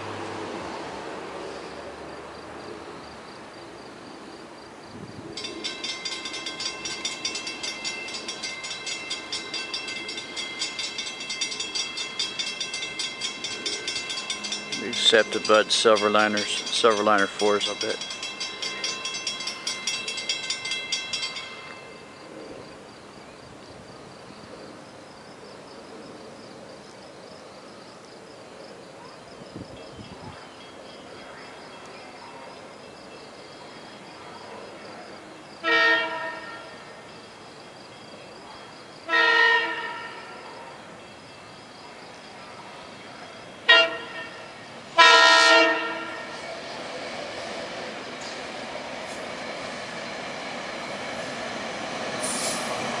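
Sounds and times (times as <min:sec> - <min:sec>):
train horn blasts: 0:35.6 - 0:36.9, 0:39.0 - 0:40.7, 0:43.6 - 0:46.4.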